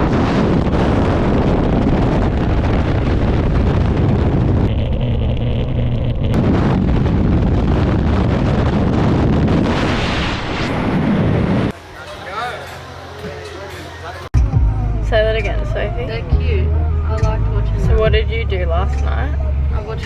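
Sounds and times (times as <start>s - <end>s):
wind rushing over microphone: 0.0s - 11.8s.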